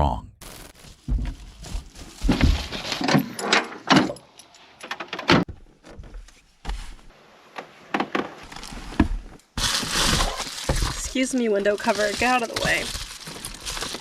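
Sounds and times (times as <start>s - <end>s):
rustling: 0.4s - 3.4s, 8.4s - 14.0s.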